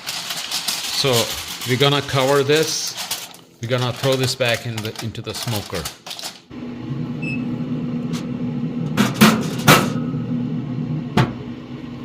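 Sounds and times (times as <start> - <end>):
pellet smoker humming: 6.5 - 12.0.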